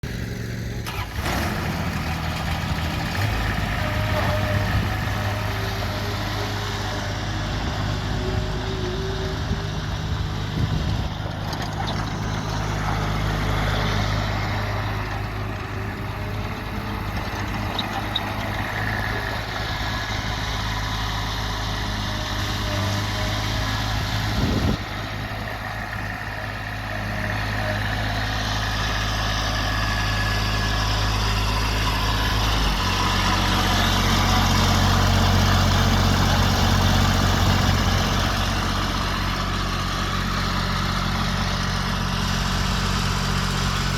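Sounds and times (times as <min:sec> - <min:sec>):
mower diesel engine running: 0:00.0 - 0:43.9.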